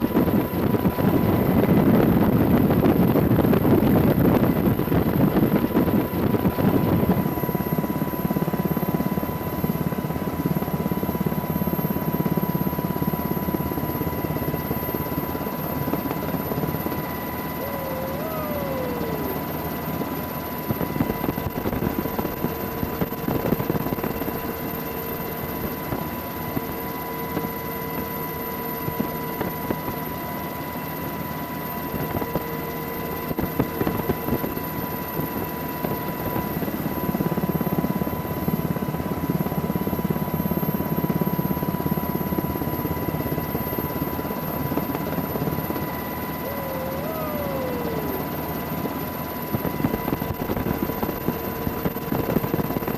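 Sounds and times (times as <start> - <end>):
helicopter rotor and engine drone: 0.0 - 52.9
thin steady whine: 5.9 - 21.9, 42.3 - 52.9.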